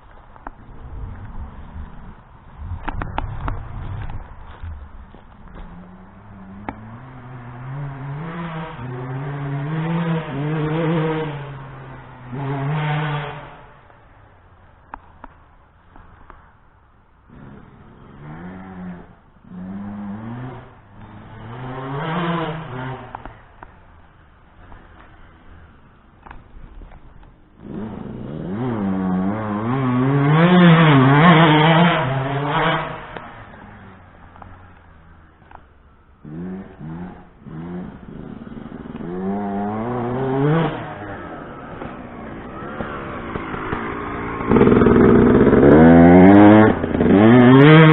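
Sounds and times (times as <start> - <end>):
two-stroke motorcycle engine revving: 0.4 - 13.9, 17.3 - 35.6, 36.2 - 47.9.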